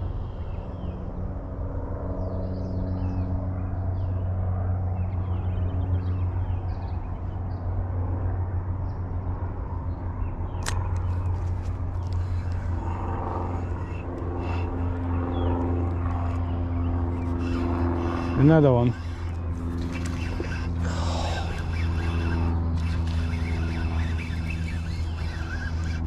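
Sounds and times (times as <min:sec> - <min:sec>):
low mechanical hum: 0:00.0 - 0:26.0
sharp click: 0:10.6 - 0:11.4.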